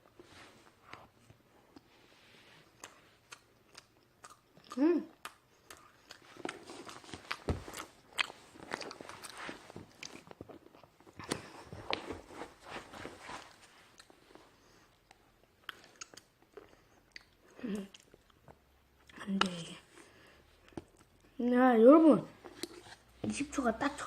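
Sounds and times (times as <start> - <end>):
person chewing: 2.6 - 12.1, 13.9 - 19.8.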